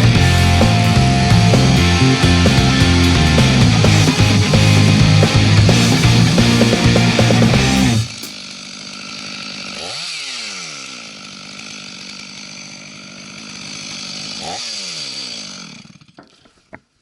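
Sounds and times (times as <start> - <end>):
loud rock music: 0.0 - 8.3
chainsaw idling and revving: 0.0 - 16.5.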